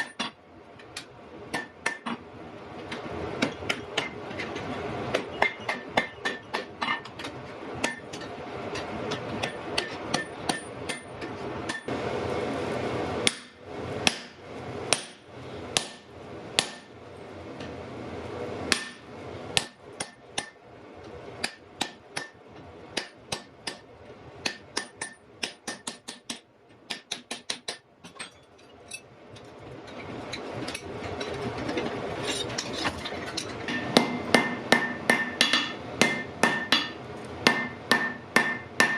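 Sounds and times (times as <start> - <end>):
hammer striking iron on anvil: 0.0 - 0.4, 1.5 - 2.2, 3.4 - 4.2, 5.1 - 11.9, 13.2 - 15.2, 15.8 - 16.9, 18.7 - 19.0, 19.6 - 20.6, 21.4 - 28.4, 33.7 - 38.9.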